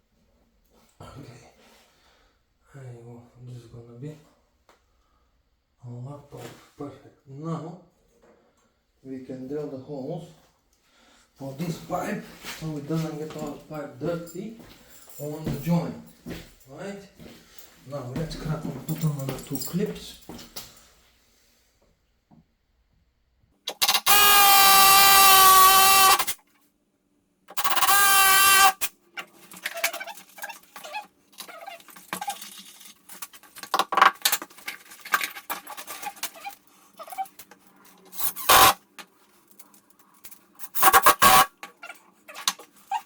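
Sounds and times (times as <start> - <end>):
power drill running: 23.7 - 26.4, 27.6 - 28.9, 38.2 - 38.8, 40.8 - 41.5.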